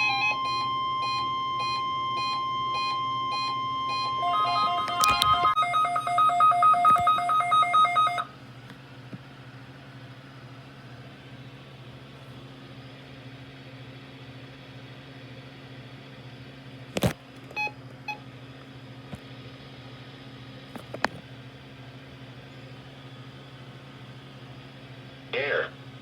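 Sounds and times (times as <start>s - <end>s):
short beeps: 0.1s - 8.2s.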